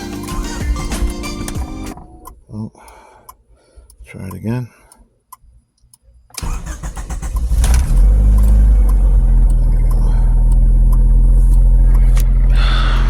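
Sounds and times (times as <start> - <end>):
car engine starting and idling: 6.3 - 13.0.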